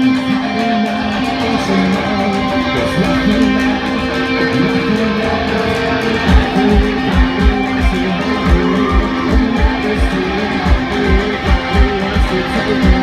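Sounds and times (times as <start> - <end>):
loud electric guitars: 0.0 - 13.0
drum hits: 6.3 - 13.0.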